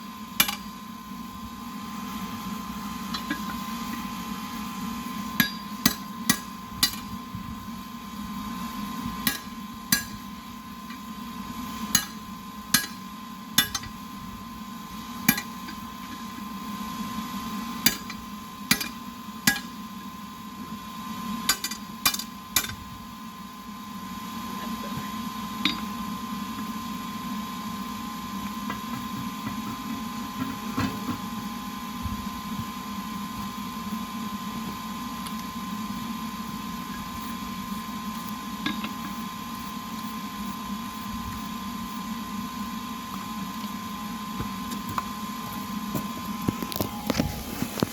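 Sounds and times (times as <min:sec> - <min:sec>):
steady hum: 0:00.0 - 0:47.9
hammer striking metal on anvil: 0:00.4 - 0:00.7, 0:05.4 - 0:07.1, 0:09.2 - 0:10.2, 0:12.0 - 0:13.0, 0:13.6 - 0:14.0, 0:15.3 - 0:15.5, 0:17.9 - 0:19.8, 0:21.5 - 0:22.8.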